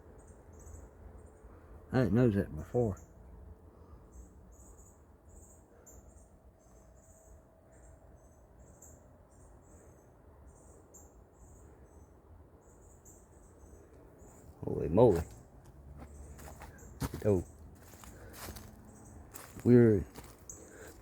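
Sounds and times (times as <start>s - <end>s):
insect chirping: 4.1s - 21.0s.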